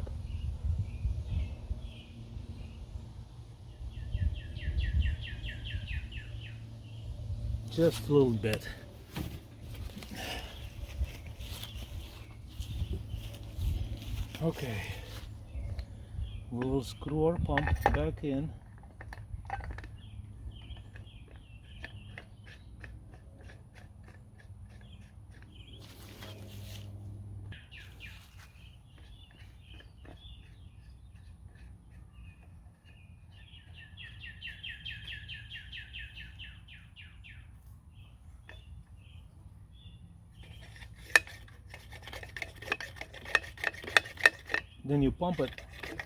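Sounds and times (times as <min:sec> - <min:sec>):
small birds chirping: 0:00.0 - 0:46.0
bird trill: 0:27.6 - 0:37.5.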